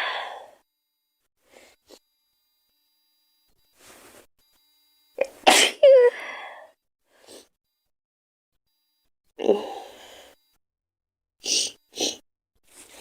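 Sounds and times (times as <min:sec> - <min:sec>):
loud burst of breath: 0:00.0 - 0:00.5
girl sneezing: 0:05.2 - 0:06.2.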